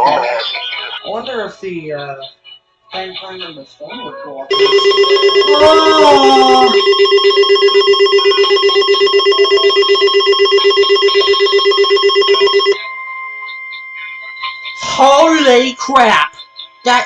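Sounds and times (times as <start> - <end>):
steady high alert tone: 4.5 - 13.8
rapid electronic alarm beeps: 4.5 - 14.0.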